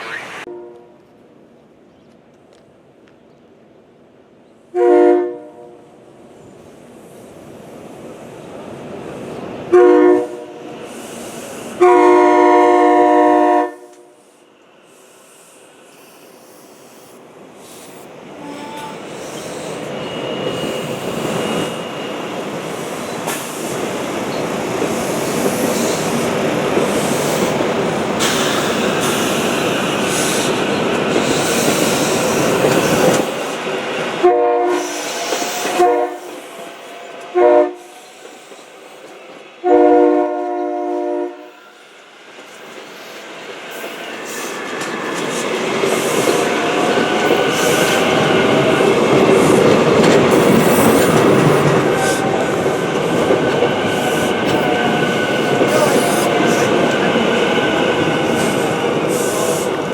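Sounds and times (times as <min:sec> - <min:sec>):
train running noise: 0:00.0 - 0:59.9
train horn blasts: 0:00.1 - 0:01.1, 0:04.7 - 0:05.9, 0:09.7 - 0:10.7, 0:11.8 - 0:14.2, 0:34.2 - 0:36.4, 0:37.3 - 0:38.2, 0:39.6 - 0:41.8
train wheels rumbling on rails: 0:06.2 - 0:59.9.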